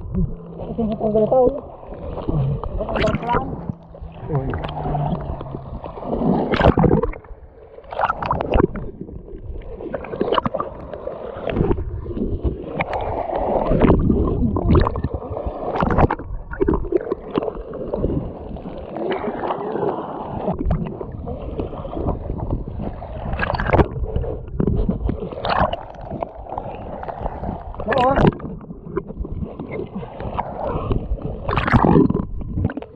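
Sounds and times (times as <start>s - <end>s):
water sloshing and gurgling: 0.0s - 32.9s
splashes and knocks: 2.0s - 7.3s, 13.6s - 17.6s.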